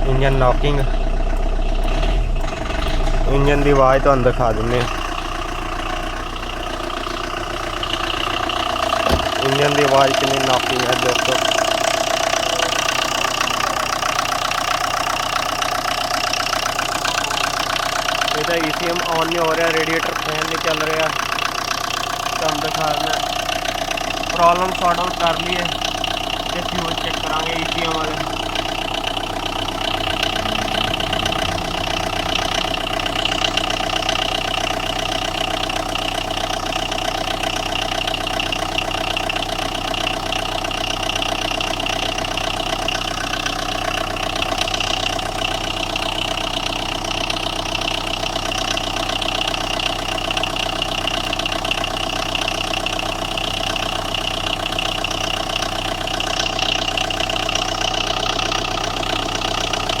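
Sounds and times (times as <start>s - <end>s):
man talking: 0.0s - 1.0s, 3.2s - 5.0s, 9.3s - 11.6s, 18.3s - 21.2s, 22.4s - 23.3s, 24.3s - 25.8s, 26.5s - 28.4s
diesel engine idling with knock: 0.0s - 60.0s.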